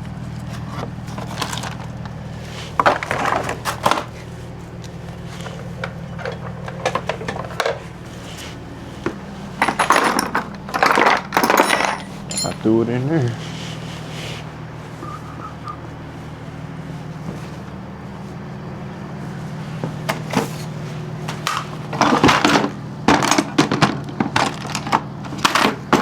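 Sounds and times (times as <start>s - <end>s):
steady low hum: 0.0s - 26.0s
loose items clattering: 0.1s - 13.9s, 19.8s - 26.0s.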